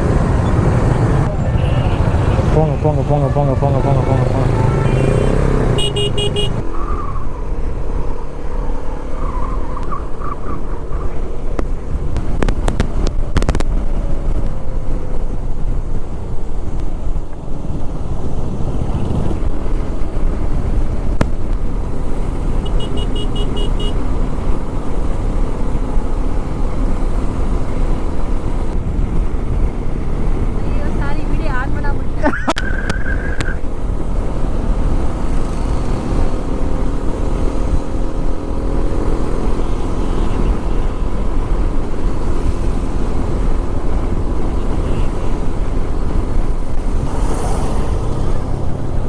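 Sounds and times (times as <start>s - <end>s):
motorcycle engine running: 0.0s - 6.6s
riding wind noise: 0.0s - 49.0s.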